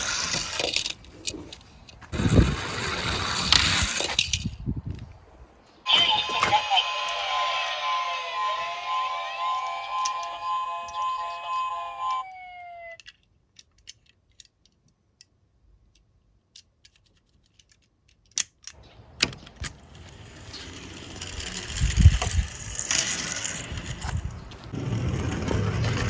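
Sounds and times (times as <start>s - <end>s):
toy car rolling and rattling: 0.0s - 4.6s, 9.0s - 14.9s, 19.6s - 26.0s
toy electronic siren: 5.9s - 13.1s
toy handling clicks: 9.6s - 11.4s, 12.9s - 18.8s.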